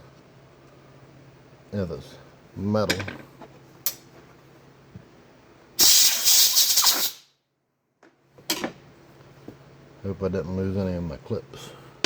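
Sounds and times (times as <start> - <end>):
air blow gun hissing blast: 5.8 - 7.3.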